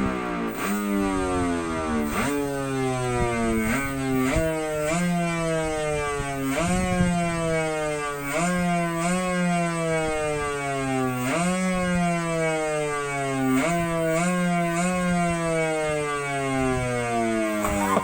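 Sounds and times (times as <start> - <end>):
synthetic motorcycle engine revving: 0.0 - 18.0.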